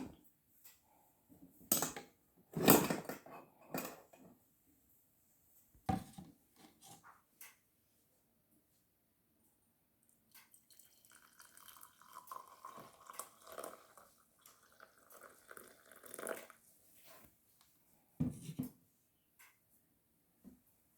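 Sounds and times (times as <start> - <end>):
liquid dripping and trickling: 10.3 - 16.7.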